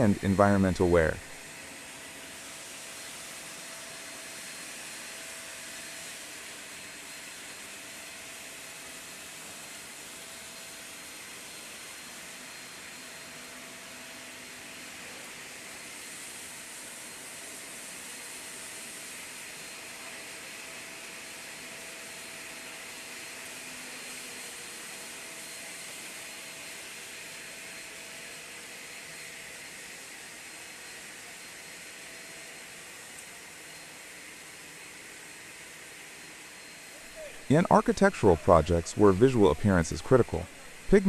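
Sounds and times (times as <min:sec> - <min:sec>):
faint steady hum: 0:36.3 - 0:41.0
machinery hissing: 0:37.0 - 0:41.0.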